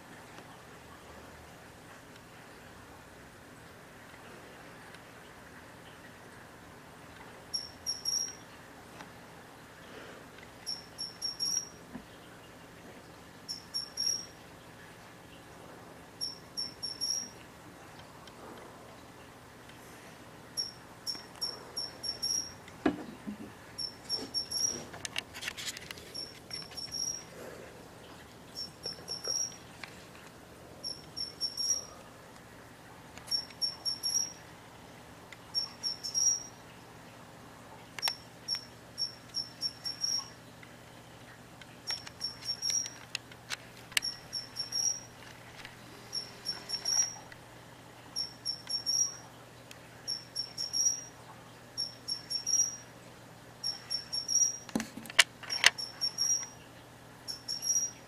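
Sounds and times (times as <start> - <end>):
cricket chirping: 7.5 - 8.4, 10.7 - 11.8, 13.5 - 14.3, 16.2 - 17.3, 20.6 - 22.6, 23.8 - 24.8, 26.2 - 27.3, 28.6 - 29.6, 30.8 - 32.0, 33.3 - 34.4, 35.5 - 36.5, 38.0 - 40.3, 41.9 - 43.0, 44.0 - 45.1, 46.1 - 47.2, 48.2 - 49.2, 50.1 - 51.1, 51.8 - 52.9, 53.6 - 54.7, 55.5 - 56.6, 57.3 - 58.0
crackling clicks: 41.6 - 47.4, 54.4 - 56.5.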